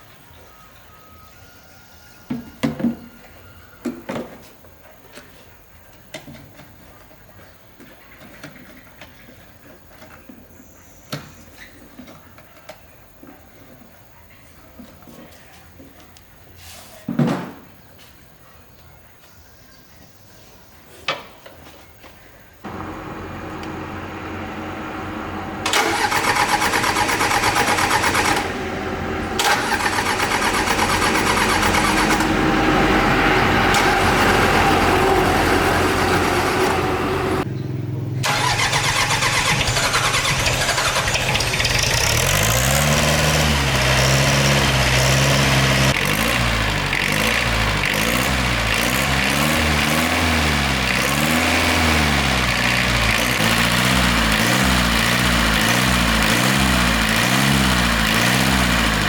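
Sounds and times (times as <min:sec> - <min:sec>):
tractor engine cranking on starter: 0:22.6 - 0:59.0
tractor engine running and revving: 0:22.6 - 0:59.0.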